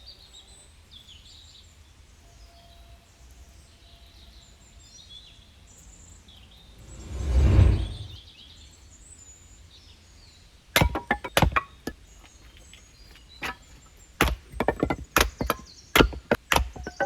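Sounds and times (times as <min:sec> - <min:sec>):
sharp knocks and clacks: 0:10.8 - 0:17.0.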